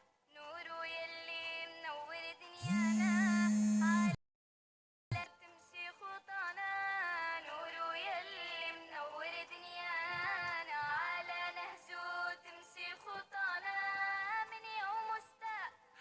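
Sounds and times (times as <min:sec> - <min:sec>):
woman singing: 0:00.3 - 0:04.2, 0:05.1 - 0:16.0.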